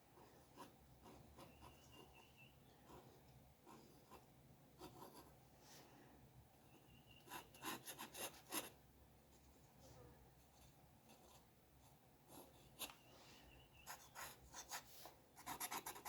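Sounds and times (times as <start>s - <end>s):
drawing tool scratching paper: 7.2s - 8.8s, 13.8s - 16.0s.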